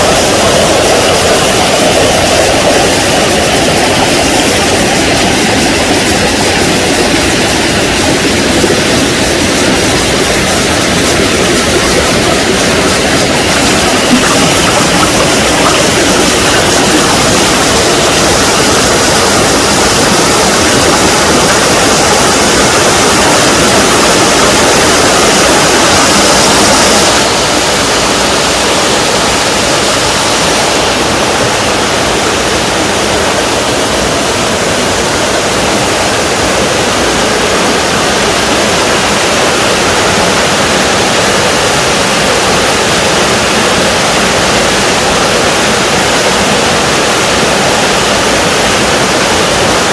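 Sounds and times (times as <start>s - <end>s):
waterfall pouring and splashing: 0.0s - 49.9s.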